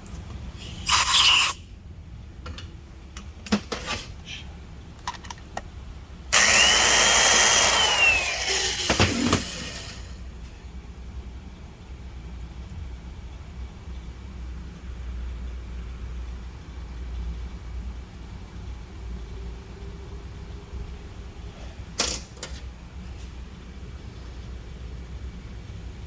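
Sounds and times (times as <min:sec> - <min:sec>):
high-speed power tool whine: 0:06.3 - 0:10.2.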